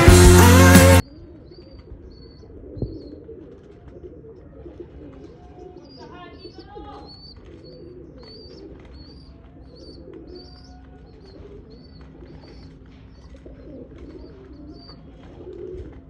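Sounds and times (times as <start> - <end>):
pigeons cooing: 1.0 - 16.0.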